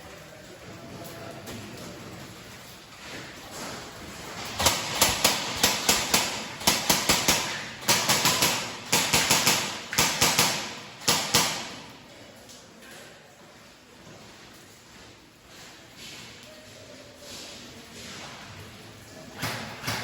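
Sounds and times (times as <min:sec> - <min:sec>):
airsoft guns firing in a tunnel: 0:03.1 - 0:12.3.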